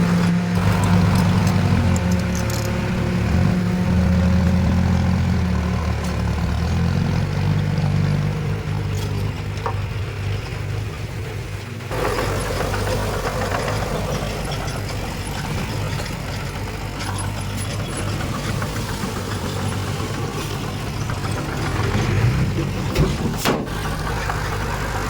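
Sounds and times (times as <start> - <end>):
heavy diesel engine running: 0.0 - 25.0.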